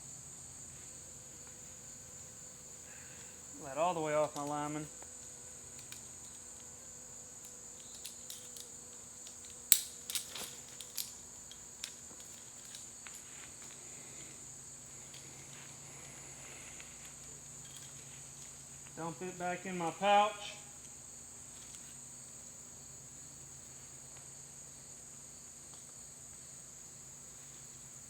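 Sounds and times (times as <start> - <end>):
high-pitched insect chorus: 0.0 - 28.0
climbing gear clicking: 7.4 - 13.8, 17.0 - 18.5.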